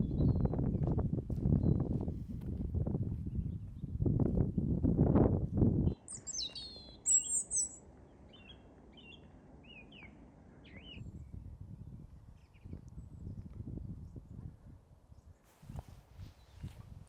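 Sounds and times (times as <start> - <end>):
small birds chirping: 5.8 - 11.2.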